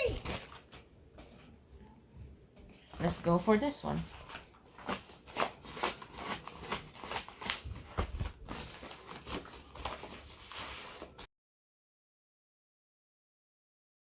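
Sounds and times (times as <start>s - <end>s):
packaging crinkling: 4.2s - 11.3s.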